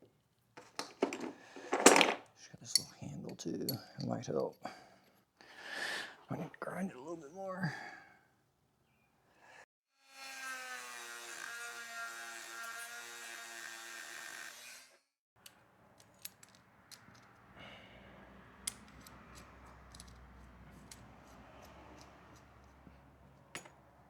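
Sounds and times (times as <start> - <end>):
power grinder grinding metal: 10.1 - 14.9
metal clicks and ticks: 15.4 - 17.4, 18.6 - 23.8.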